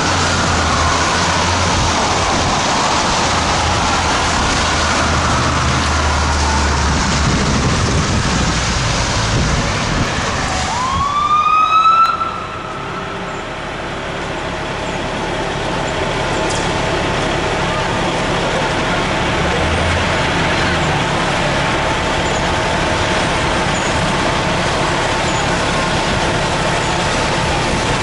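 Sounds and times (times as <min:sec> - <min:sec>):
faint wavering siren wail: 0:00.0 - 0:04.2, 0:10.3 - 0:14.0
loud rising siren whoop: 0:00.0 - 0:08.2, 0:08.8 - 0:13.9
truck engine rumble: 0:00.0 - 0:28.0.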